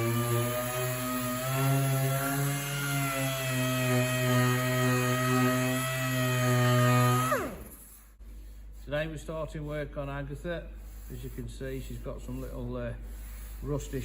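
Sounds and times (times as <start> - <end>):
power tool whining and spinning down: 0.0 - 7.9.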